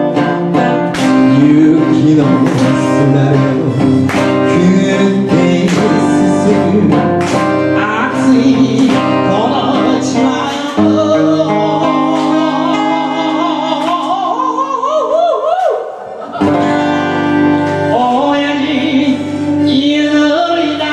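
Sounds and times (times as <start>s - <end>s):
strummed band backing: 0.0s - 14.8s, 15.9s - 20.9s
person singing with vibrato: 0.0s - 20.9s.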